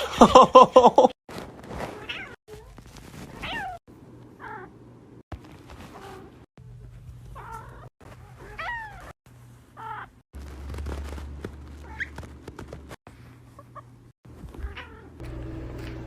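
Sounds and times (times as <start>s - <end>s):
cat meowing and chirping: 7.4s - 9.2s, 14.6s - 15.2s.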